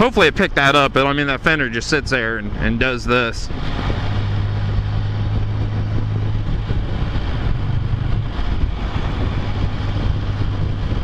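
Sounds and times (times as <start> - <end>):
wind rushing over microphone: 0.0 - 11.0
motorcycle engine cruising: 2.5 - 11.0.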